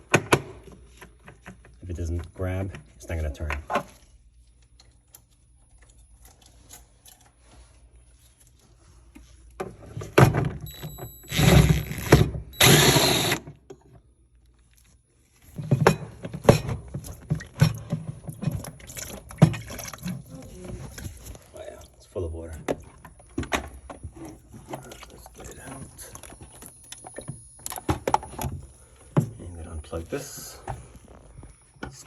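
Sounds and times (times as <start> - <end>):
power driver spinning: 11.1 - 13.4.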